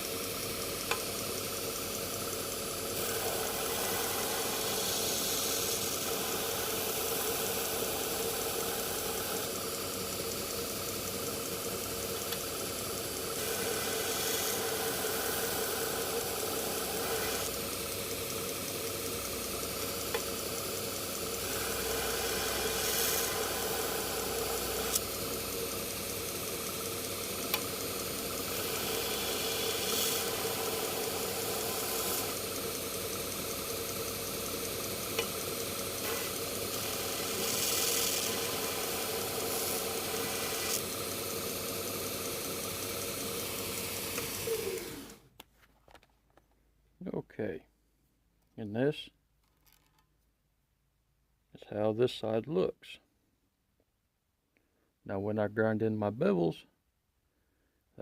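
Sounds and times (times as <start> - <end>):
belt grinder motor hum: 0.0 - 45.3
steel blade grinding hiss: 3.0 - 9.5, 13.1 - 17.6, 21.4 - 26.1, 28.4 - 32.5, 35.1 - 40.9.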